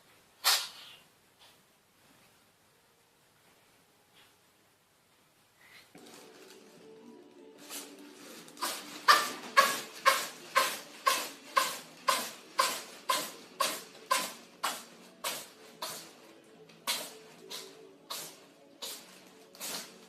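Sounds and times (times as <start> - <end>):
cat sneezing: 0.4 - 1.0, 8.6 - 16.2, 16.9 - 20.0.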